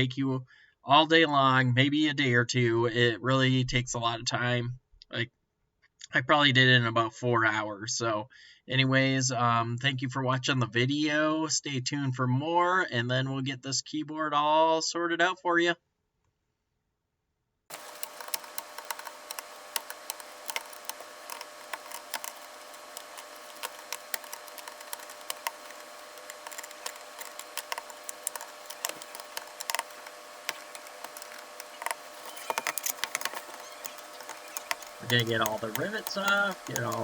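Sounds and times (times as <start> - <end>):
small tools clicking on plastic: 17.7 - 37.0
steady background hum: 17.7 - 37.0.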